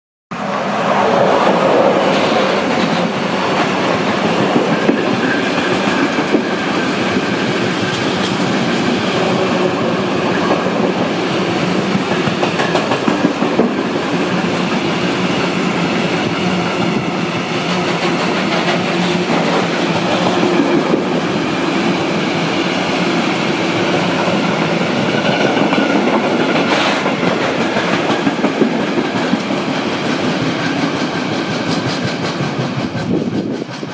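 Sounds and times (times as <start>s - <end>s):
freight train rumbling past: 0.3s - 33.9s
wheels clacking over rail joints: 1.9s - 14.7s, 24.2s - 33.9s.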